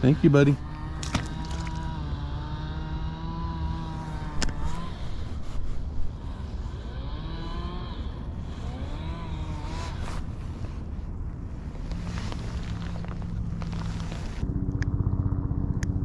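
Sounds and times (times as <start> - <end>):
vehicle engine rumbling: 0.0 - 16.0.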